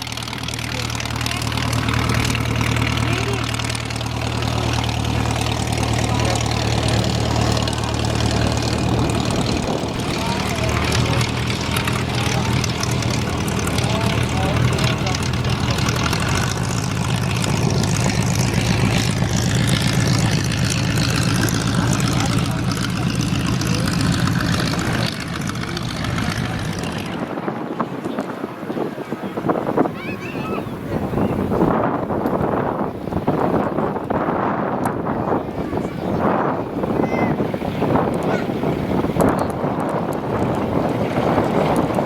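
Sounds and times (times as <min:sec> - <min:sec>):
propeller aircraft engine running: 0:00.0 - 0:42.0.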